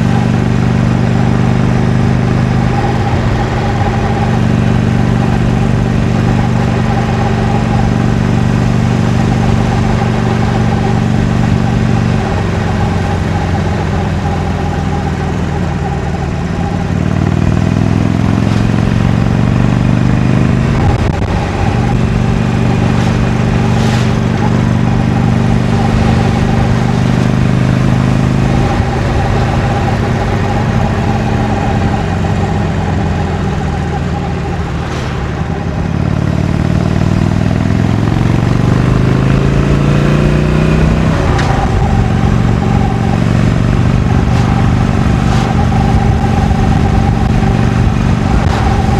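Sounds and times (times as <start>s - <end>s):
motorcycle engine shifting gears: 0.0s - 48.9s.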